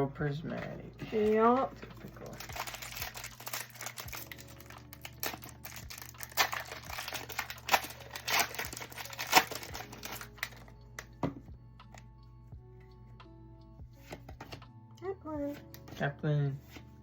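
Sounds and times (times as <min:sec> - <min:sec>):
foil wrapper crinkling and tearing: 0:01.8 - 0:10.7.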